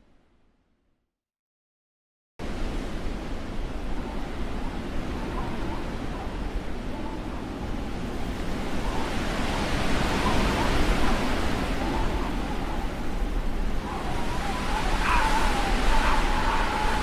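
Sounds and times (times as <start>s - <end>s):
thin wind whistling: 3.4s - 17.0s
blizzard wind gusting: 6.5s - 17.0s.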